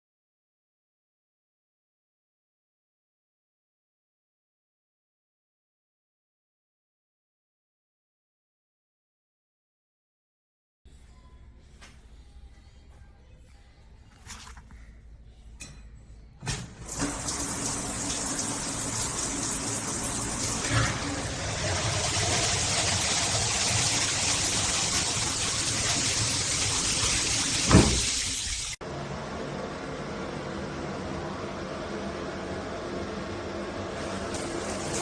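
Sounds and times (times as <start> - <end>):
shower water spraying: 16.8 - 28.8, 34.0 - 35.0.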